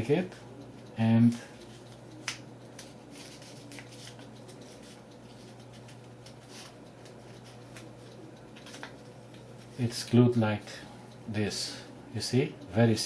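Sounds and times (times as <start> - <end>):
low steady hum: 0.0 - 13.0
rustling of masking tape: 1.7 - 9.8.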